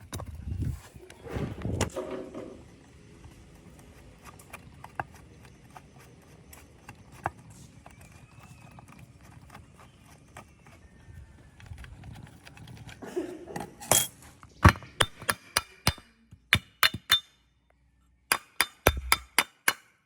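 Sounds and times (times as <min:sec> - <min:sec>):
tools clicking and knocking: 0:13.6 - 0:17.4, 0:18.3 - 0:20.0.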